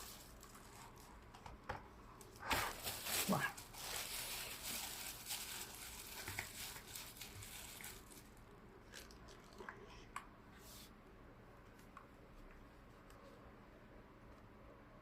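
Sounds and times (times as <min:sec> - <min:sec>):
packaging rustling and crinkling: 0:00.0 - 0:01.6, 0:02.2 - 0:09.2.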